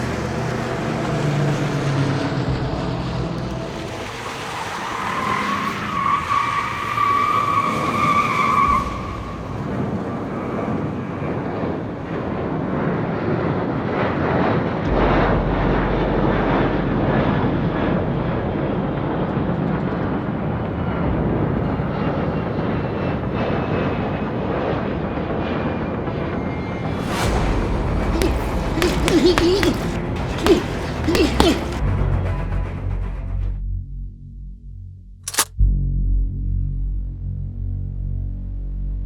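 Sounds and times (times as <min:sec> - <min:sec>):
car engine and road noise: 0:00.0 - 0:12.1.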